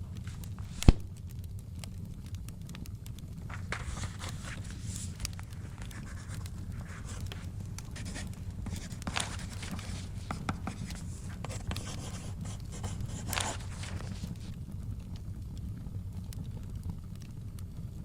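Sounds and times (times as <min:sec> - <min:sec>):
fire crackling: 0:00.0 - 0:18.0
paper swishes: 0:00.2 - 0:01.1, 0:03.5 - 0:14.6
pen scratching on paper: 0:05.8 - 0:14.3.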